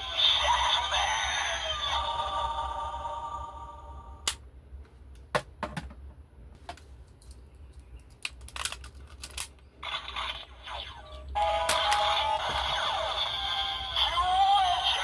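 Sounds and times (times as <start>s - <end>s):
toy sound effects: 9.8s - 15.0s.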